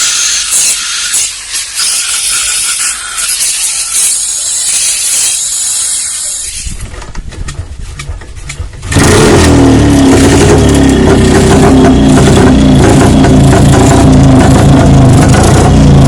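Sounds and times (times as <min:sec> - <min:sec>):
hiss: 0:00.0 - 0:06.8
motorcycle engine running: 0:06.8 - 0:16.0.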